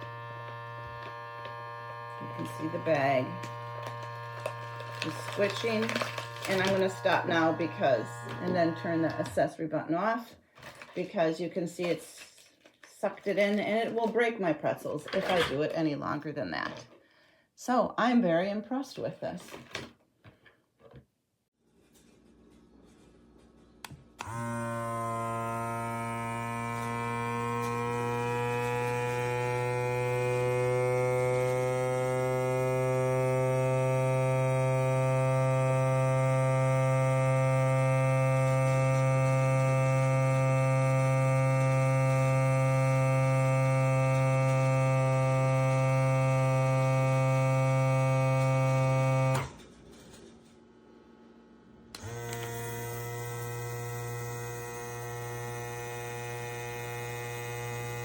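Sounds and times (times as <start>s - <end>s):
vacuum pump motor humming: 0.0s - 9.4s, 23.8s - 49.6s, 52.0s - 58.0s.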